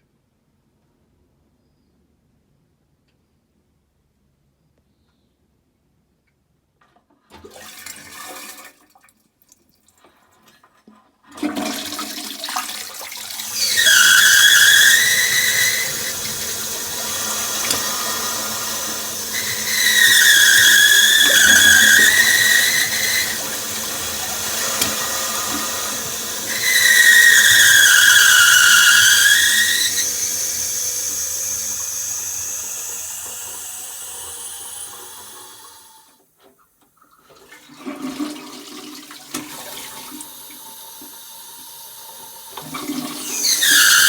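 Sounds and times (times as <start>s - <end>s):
toilet flushing water rushing: 7.3s - 8.9s, 11.3s - 36.2s, 37.1s - 44.0s
whistling squeal: 13.4s - 35.8s, 43.2s - 44.0s.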